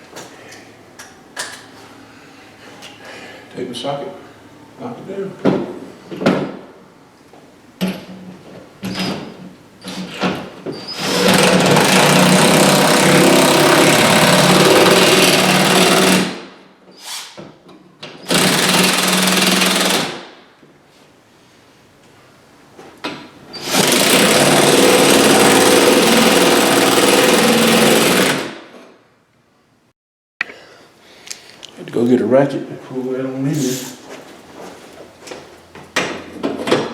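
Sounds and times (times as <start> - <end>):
power driver driving screws: 10.9 - 16.4, 18.2 - 20.2, 23.6 - 28.6.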